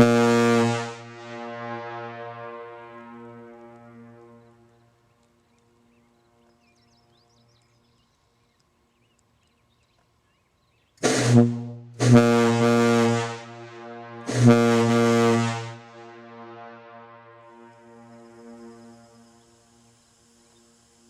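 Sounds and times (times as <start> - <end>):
ship's air horn blasts: 0.0 - 4.7, 11.0 - 19.9.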